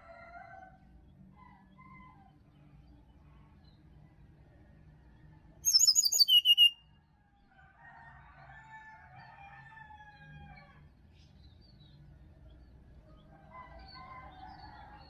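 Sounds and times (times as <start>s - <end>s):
bird singing high descending notes: 5.7s - 6.7s
bird warbling: 5.7s - 6.7s.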